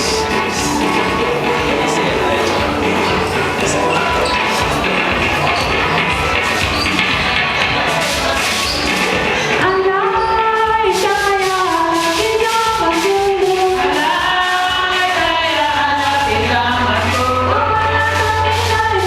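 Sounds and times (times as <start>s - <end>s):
group singing a church song: 0.0s - 6.6s
steady percussive beat: 0.0s - 19.0s.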